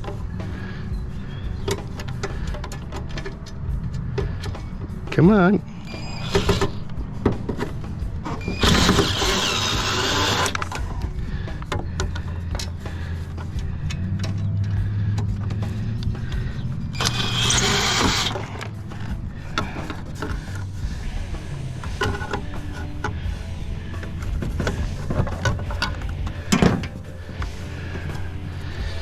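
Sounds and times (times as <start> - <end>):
power drill driving screws: 5.9 - 6.8, 8.4 - 10.6, 17.0 - 18.5
metal parts clattering: 17.0 - 18.5.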